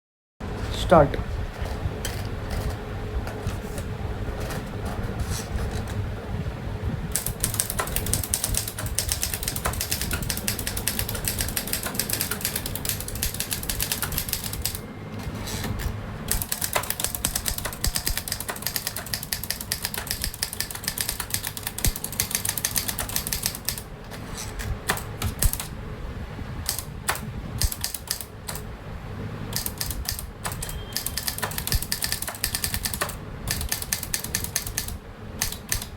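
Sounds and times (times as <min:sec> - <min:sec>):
manual typewriter keystrokes: 0:07.1 - 0:25.8, 0:26.6 - 0:28.7, 0:29.5 - 0:35.9.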